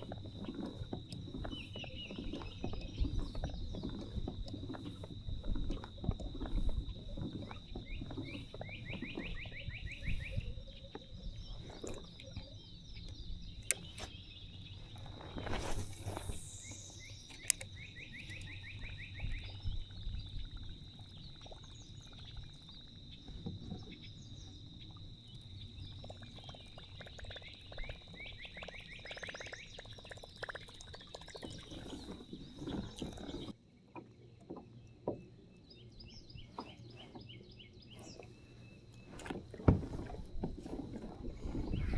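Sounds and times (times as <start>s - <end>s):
water and kayak noise: 0.0s - 41.9s
steady high whine: 14.8s - 18.6s.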